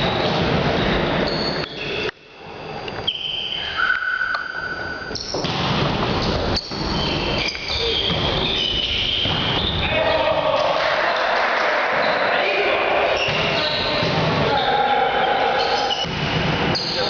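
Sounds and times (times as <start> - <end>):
shoe squeaks: 0.0 - 2.1, 3.0 - 5.5, 6.1 - 9.9, 13.1 - 17.0
echoing sports hall noise: 0.0 - 17.0.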